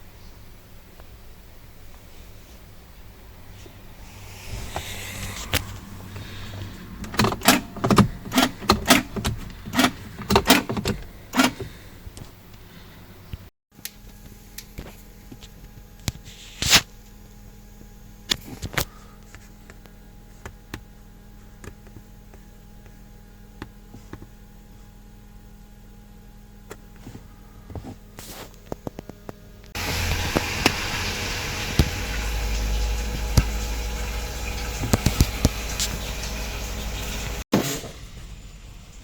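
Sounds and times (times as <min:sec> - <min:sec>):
faint steady hum: 0:00.0 - 0:37.4
sharp clicks and knocks: 0:07.0 - 0:12.3.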